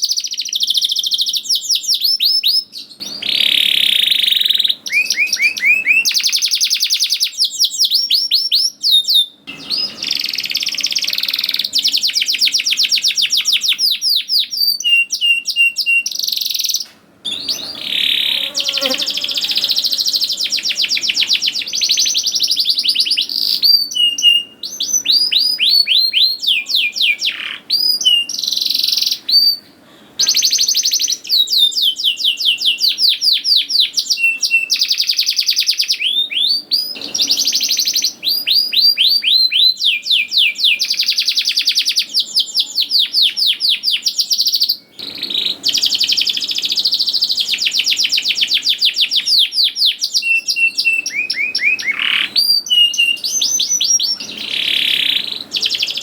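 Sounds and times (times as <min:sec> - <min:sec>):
canary singing trills: 0:00.0 - 0:56.0.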